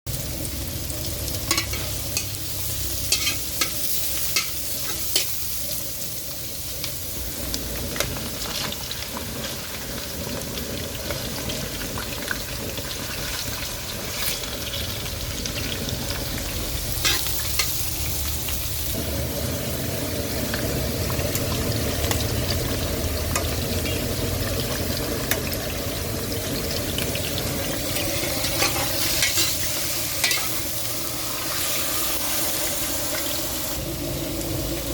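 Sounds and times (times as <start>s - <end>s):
food sizzling in a pan: 0.1s - 34.9s
utensil clicking on pan: 3.1s - 5.4s, 30.2s - 30.6s.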